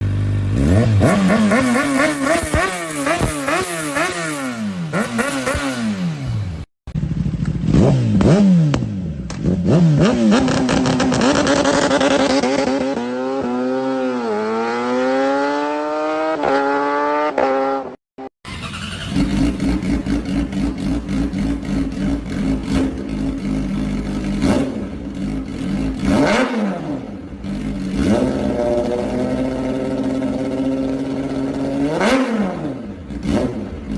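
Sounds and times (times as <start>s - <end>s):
motorcycle engines revving: 0.0s - 33.9s.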